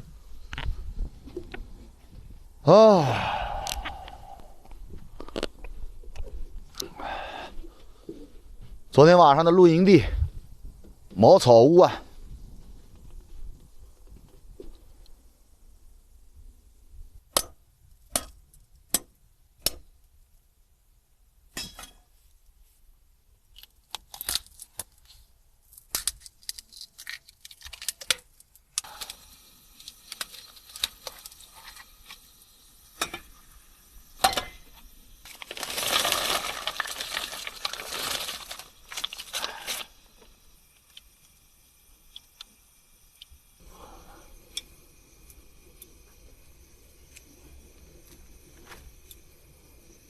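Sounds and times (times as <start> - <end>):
rustling and crinkling: 23.5 - 32.3, 35.2 - 41.0.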